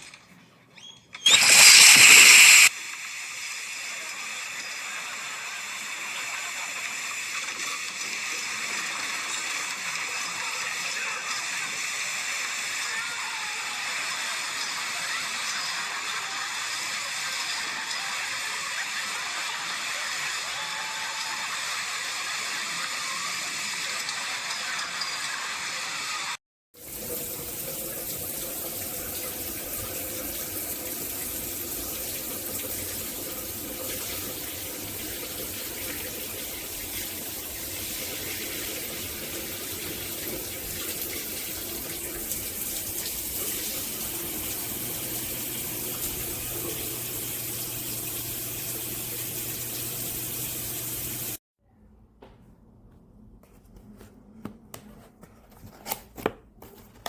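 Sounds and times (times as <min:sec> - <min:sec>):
shower water spraying: 0:01.2 - 0:13.0, 0:26.8 - 0:51.4.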